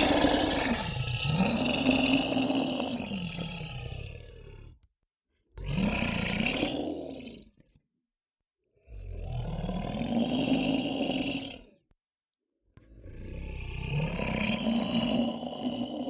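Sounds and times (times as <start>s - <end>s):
monster roaring: 0.0s - 4.2s.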